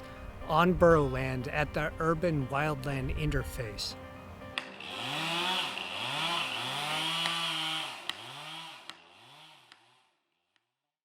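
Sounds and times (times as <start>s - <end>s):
chainsaw revving: 4.6s - 10.2s.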